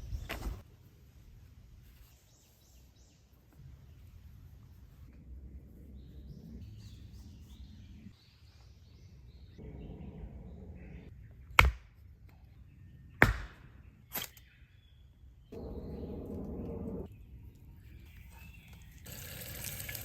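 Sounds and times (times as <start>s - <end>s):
faint birds chirping: 1.7s - 20.0s.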